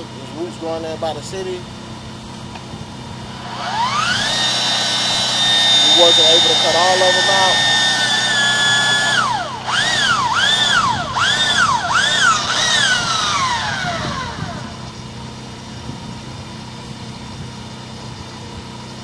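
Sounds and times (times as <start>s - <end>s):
drain tool motor whining: 0.0s - 16.2s
low hum: 2.3s - 16.4s.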